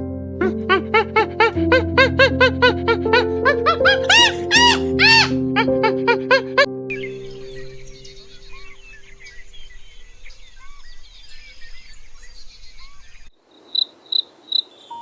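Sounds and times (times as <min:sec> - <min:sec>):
chorus of high chirps: 0:03.6 - 0:05.8, 0:06.9 - 0:15.0
cricket chirping: 0:11.9 - 0:15.0.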